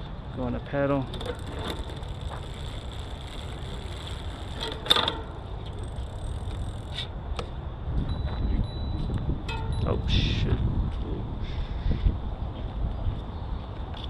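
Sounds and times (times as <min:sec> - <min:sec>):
bicycle chain whirring: 0:00.9 - 0:07.1
sharp derailleur clicks: 0:01.1 - 0:07.5.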